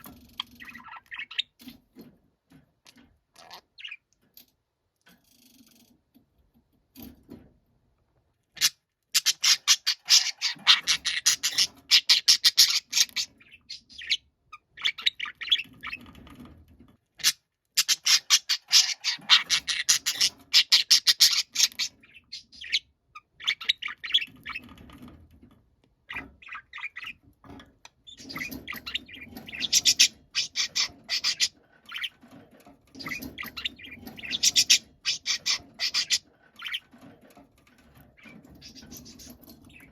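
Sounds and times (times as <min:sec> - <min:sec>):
budgerigar chirping and squawking: 0:00.0 - 0:01.8, 0:03.4 - 0:04.1, 0:08.6 - 0:16.2, 0:17.2 - 0:24.7, 0:26.1 - 0:32.3, 0:33.0 - 0:37.1, 0:38.2 - 0:39.9.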